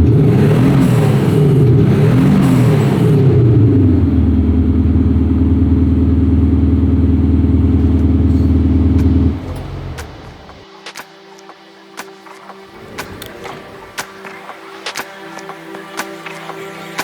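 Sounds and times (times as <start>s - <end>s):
diesel engine idling: 0.0s - 10.6s.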